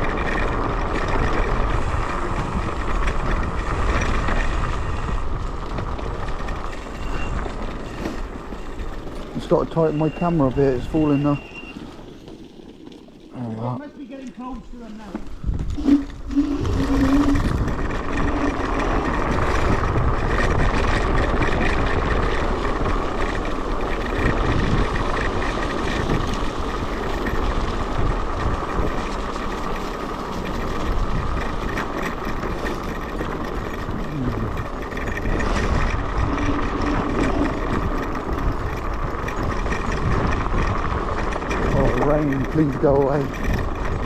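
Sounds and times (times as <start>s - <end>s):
wind rush on microphone: 0.0s - 11.5s, 15.2s - 44.0s
tyre rumble: 0.0s - 44.0s
steady high whine: 15.1s - 20.8s.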